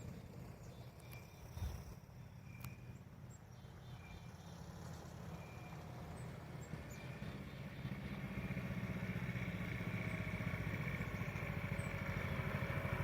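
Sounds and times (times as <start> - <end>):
small go-kart engine running: 4.5 - 13.0.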